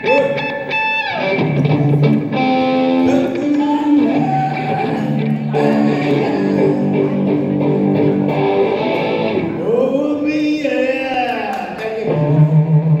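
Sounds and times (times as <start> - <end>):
band with electric guitar: 0.0 - 9.7.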